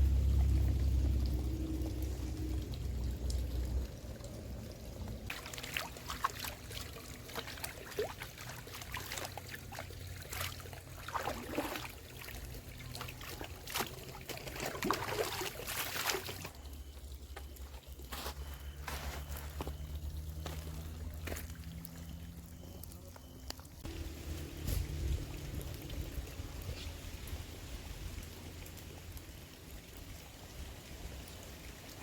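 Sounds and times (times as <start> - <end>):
water pouring and trickling: 0.0 - 32.0
small splashes and clicks: 0.1 - 23.9.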